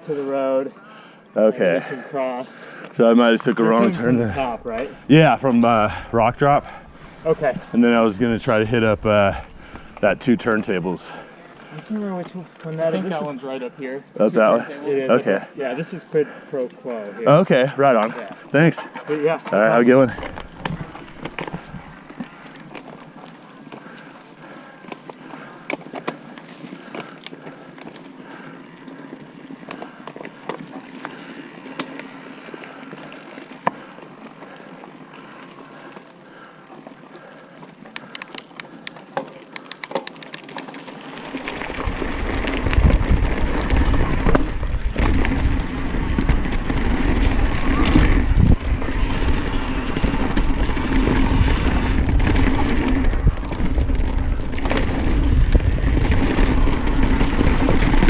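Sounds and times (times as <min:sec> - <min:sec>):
rumbling tyre noise: 0:04.0 - 0:11.2, 0:19.8 - 0:23.2, 0:41.0 - 0:58.0
bike clicks and rattles: 0:18.0 - 0:58.0
wind noise: 0:41.3 - 0:58.0.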